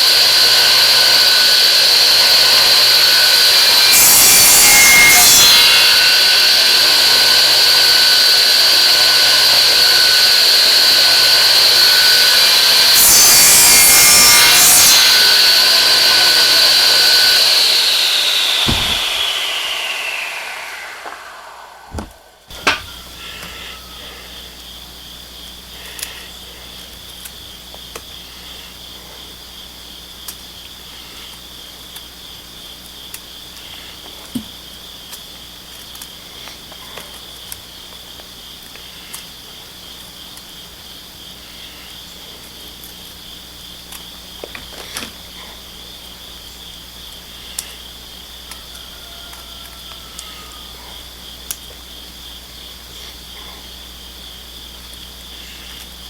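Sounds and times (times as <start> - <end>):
insects chirping: 18.6 - 56.0.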